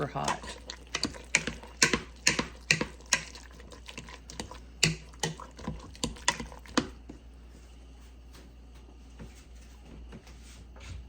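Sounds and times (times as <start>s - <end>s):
utensil tapping a mixing bowl: 0.1s - 3.4s, 4.3s - 7.0s.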